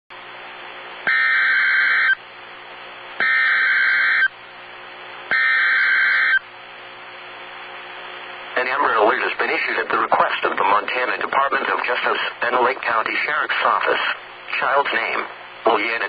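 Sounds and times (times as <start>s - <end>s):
buzzing digital data tones: 1.1s - 2.2s, 3.2s - 4.3s, 5.3s - 6.5s
radio hiss: 3.2s - 4.3s, 8.5s - 16.0s.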